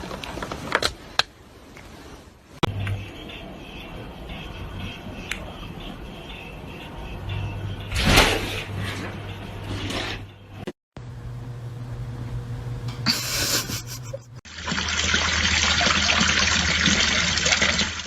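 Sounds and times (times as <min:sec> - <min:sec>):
running water: 0:14.5 - 0:18.0.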